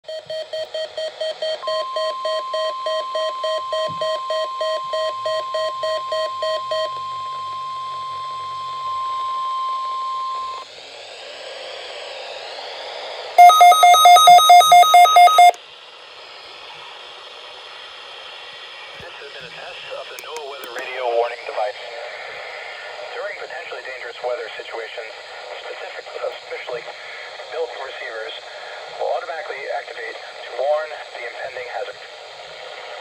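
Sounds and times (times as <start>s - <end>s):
rapid electronic beeping: 0.7s - 10.6s, 13.4s - 15.6s
radio hiss: 15.5s - 33.0s.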